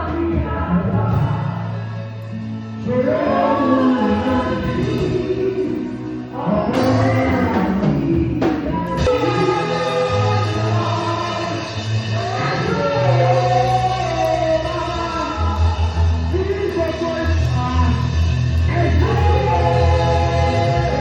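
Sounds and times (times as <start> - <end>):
instrumental backing: 0.0 - 21.0
voices singing together: 2.9 - 16.7, 18.7 - 21.0.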